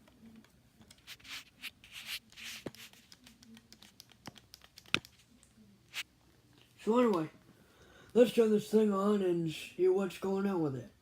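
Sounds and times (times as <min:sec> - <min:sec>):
hands rubbing small object: 0:00.9 - 0:06.1.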